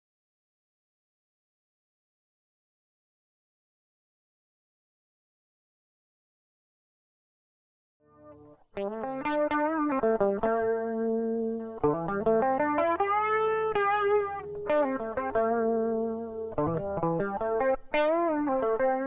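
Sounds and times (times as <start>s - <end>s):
electric guitar lead with bends: 8.2s - 19.0s.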